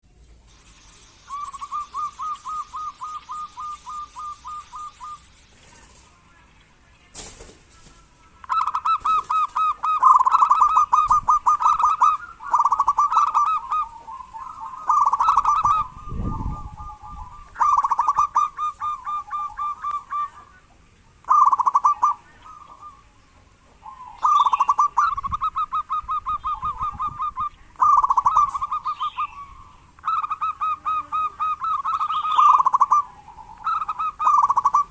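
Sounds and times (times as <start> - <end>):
dove rattling coos: 8.5 - 20.4, 21.3 - 22.8, 23.8 - 34.9.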